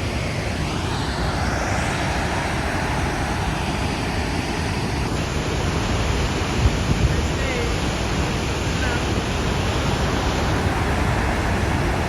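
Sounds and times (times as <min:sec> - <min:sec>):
waterfall roaring: 0:00.0 - 0:12.0.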